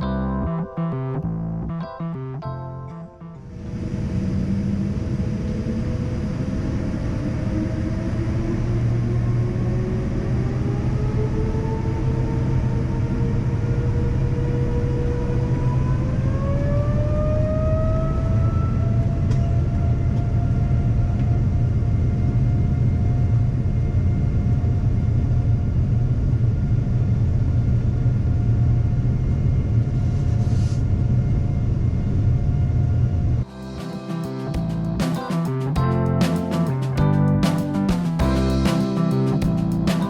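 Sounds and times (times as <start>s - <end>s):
jet engines whining: 3.4s - 22.9s
heavy steady rumble: 3.4s - 33.5s.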